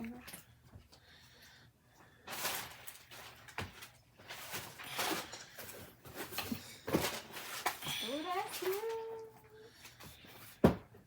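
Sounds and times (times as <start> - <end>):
cardboard packaging rustling: 2.2 - 10.8.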